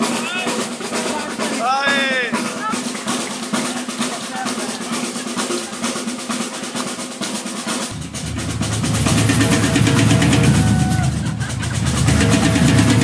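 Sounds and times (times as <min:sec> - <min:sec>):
fast sharp rattling strokes: 0:00.0 - 0:13.0
steady low rumble: 0:07.9 - 0:13.0.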